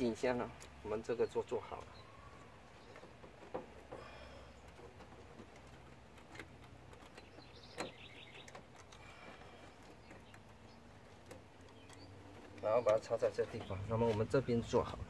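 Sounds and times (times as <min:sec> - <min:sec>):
faint bird calls: 0:01.6 - 0:05.1.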